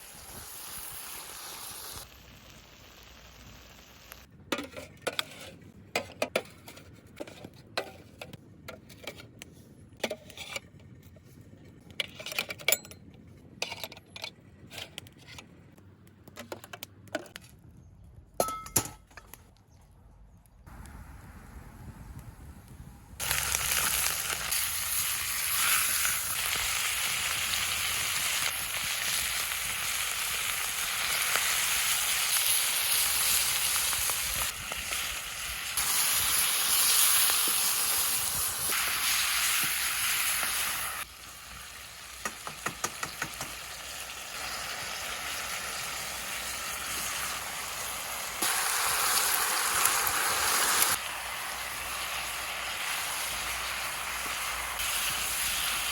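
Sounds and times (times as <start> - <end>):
food sizzling in a hot pan: 0.0 - 4.3, 23.2 - 55.9.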